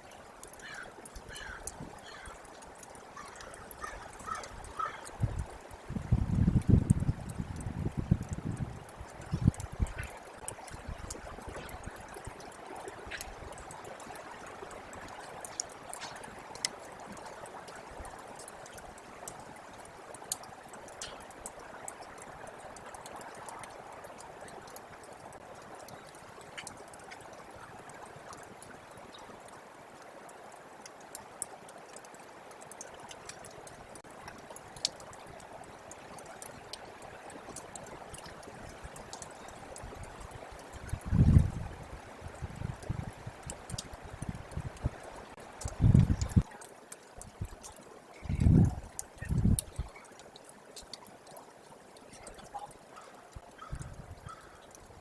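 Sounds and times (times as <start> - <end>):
meltwater running and trickling: 0.0 - 55.0.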